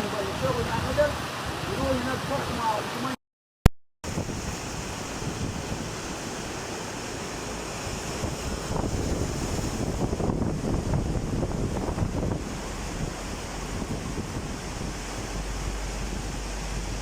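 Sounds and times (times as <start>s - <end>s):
rushing floodwater: 0.0s - 3.2s, 4.1s - 17.0s
wind buffeting microphone: 4.0s - 17.0s.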